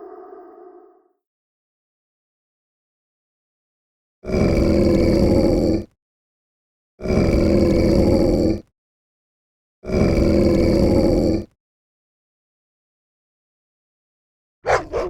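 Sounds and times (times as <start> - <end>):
wolf growling: 14.7 - 15.0.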